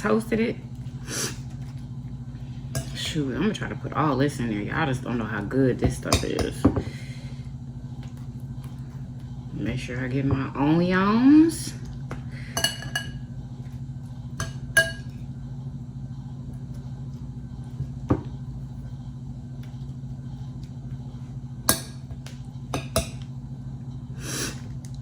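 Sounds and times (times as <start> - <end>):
steady low hum: 0.0 - 25.0
utensil clinking against dishes: 12.5 - 13.3, 14.4 - 15.2.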